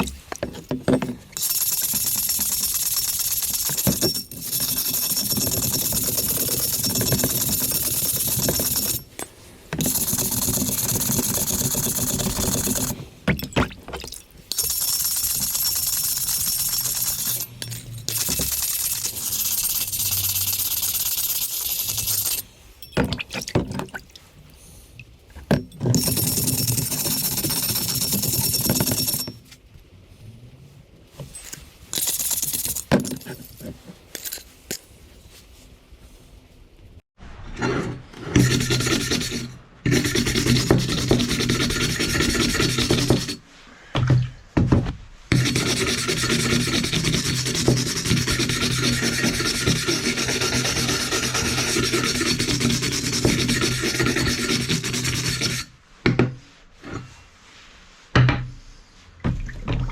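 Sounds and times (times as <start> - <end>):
handling clinks and knocks: 13.2 - 19.2, 22.1 - 24.0, 31.2 - 35.0.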